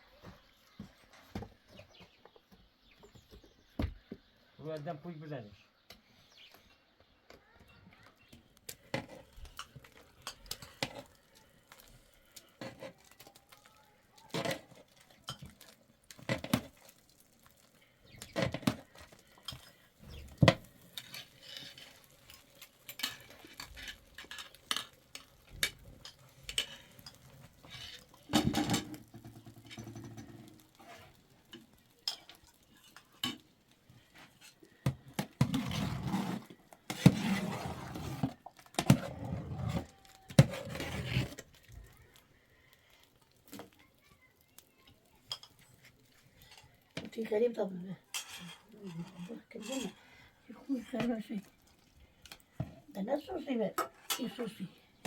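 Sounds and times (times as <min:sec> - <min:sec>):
scraping or stirring in a pot: 0:08.7 - 0:13.6, 0:14.2 - 0:42.0, 0:48.0 - 0:52.7
dishes and utensils clinking: 0:48.1 - 0:50.0.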